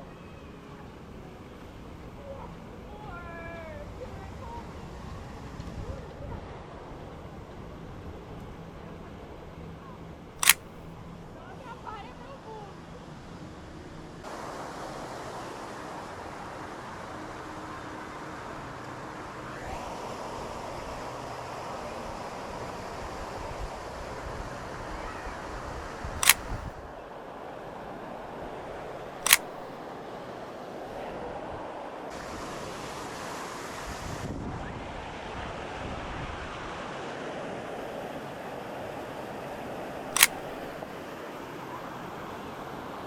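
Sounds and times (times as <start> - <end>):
outdoor background noise: 0.0 - 43.0
camera shutter clicks: 10.4 - 10.9, 26.2 - 26.7, 29.2 - 29.7, 40.1 - 40.7.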